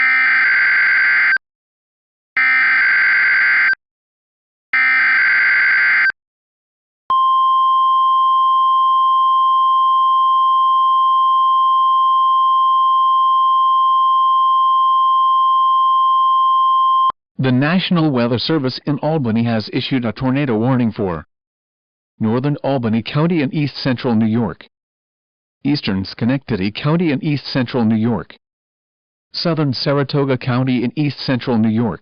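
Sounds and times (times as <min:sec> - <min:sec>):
steady alarm tone: 0:00.0 - 0:01.4, 0:02.4 - 0:03.8, 0:04.8 - 0:06.1.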